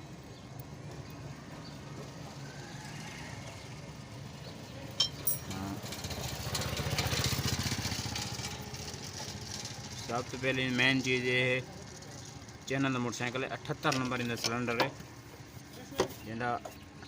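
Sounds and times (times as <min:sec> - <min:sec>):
small motorcycle engine running: 0:05.3 - 0:13.2.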